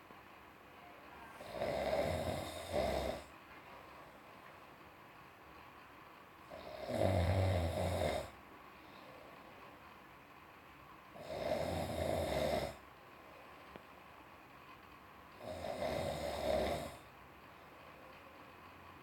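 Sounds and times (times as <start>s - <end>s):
person snoring: 1.4s - 3.3s, 6.5s - 8.4s, 11.2s - 12.8s, 15.4s - 17.1s.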